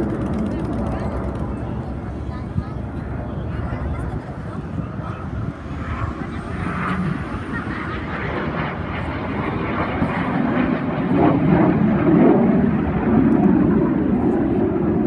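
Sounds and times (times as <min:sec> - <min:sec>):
plane flying past: 0:00.0 - 0:15.0.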